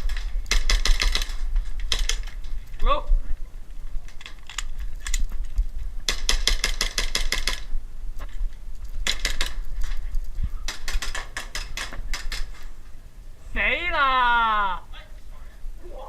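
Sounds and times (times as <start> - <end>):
airsoft guns firing: 0.0 - 2.4, 6.1 - 7.7, 9.0 - 10.0, 10.7 - 12.7.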